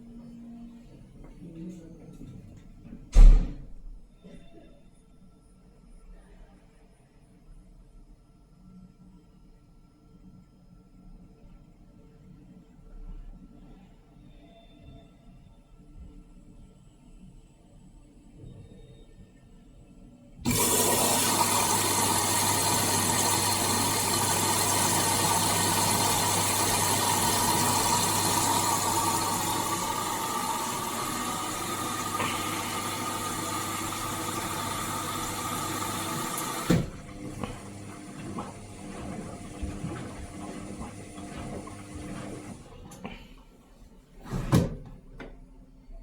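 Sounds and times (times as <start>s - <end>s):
machine thump: 3.1s - 3.9s
low pump hum: 20.4s - 43.6s
water rushing through plumbing: 20.4s - 43.6s.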